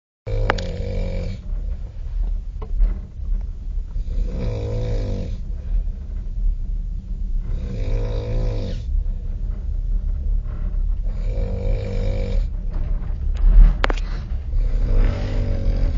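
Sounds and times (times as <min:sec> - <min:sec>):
man snoring: 0:00.3 - 0:01.4, 0:04.1 - 0:05.4, 0:07.5 - 0:08.9, 0:11.1 - 0:12.5, 0:14.5 - 0:15.9
train rumble: 0:00.3 - 0:15.9.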